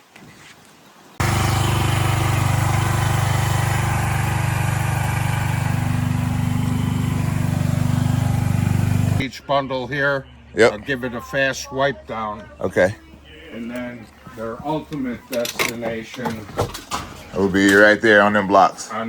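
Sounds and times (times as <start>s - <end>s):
skid steer engine running: 1.2s - 9.2s.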